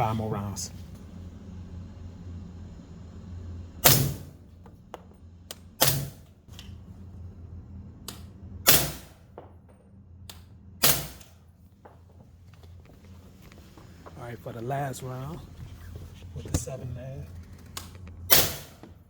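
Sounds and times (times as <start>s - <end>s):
suppressed gunshots: 3.8s - 4.3s, 5.8s - 6.2s, 8.7s - 9.5s, 10.8s - 11.3s, 18.3s - 18.8s.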